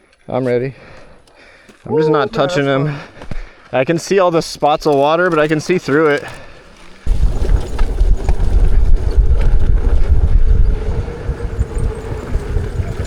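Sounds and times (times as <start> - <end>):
wind buffeting microphone: 7.0 - 13.0
electric motor whine: 7.1 - 13.0.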